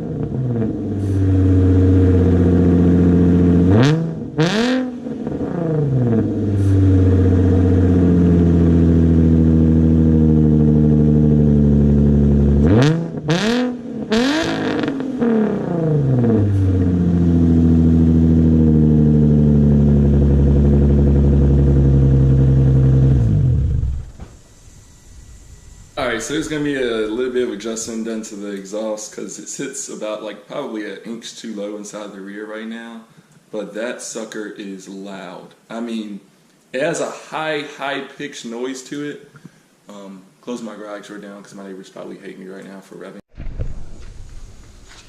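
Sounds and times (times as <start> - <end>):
engine exhaust revving: 0.0 - 28.3.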